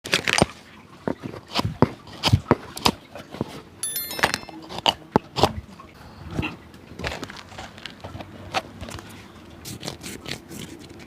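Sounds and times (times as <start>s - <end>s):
high chirp: 3.8s - 4.6s.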